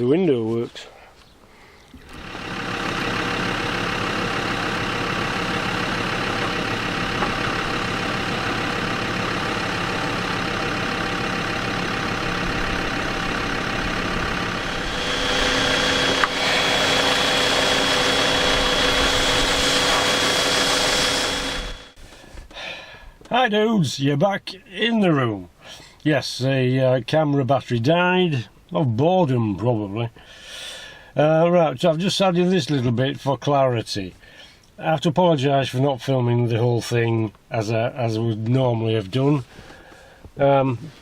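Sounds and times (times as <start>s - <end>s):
car engine idling: 1.9s - 22.0s
low hum: 1.9s - 22.0s
high whine: 2.0s - 22.0s.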